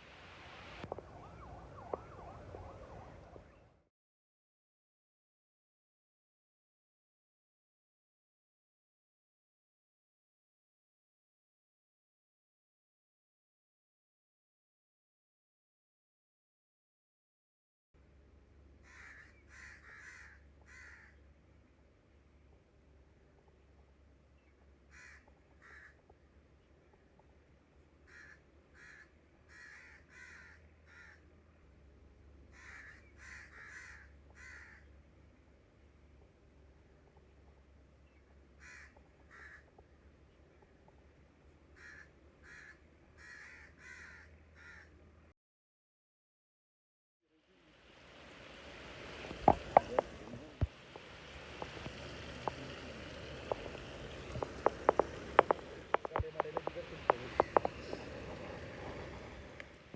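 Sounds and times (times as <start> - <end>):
crows cawing faintly: 0.6 - 3.7, 18.7 - 21.4, 24.8 - 26.2, 28.0 - 31.4, 32.4 - 35.0, 38.5 - 40.0, 41.6 - 45.0, 51.6 - 59.4
oil popping and spattering: 48.9 - 59.3.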